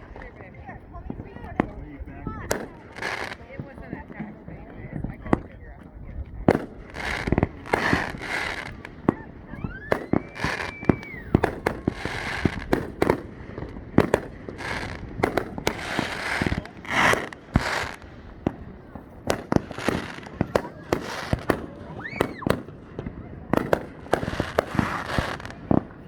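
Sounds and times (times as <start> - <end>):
fireworks bangs: 0.0 - 26.0.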